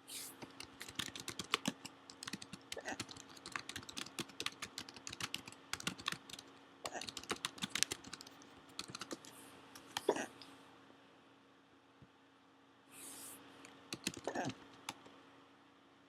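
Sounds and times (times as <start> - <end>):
keyboard typing clicks: 0.4 - 10.1, 13.9 - 15.1.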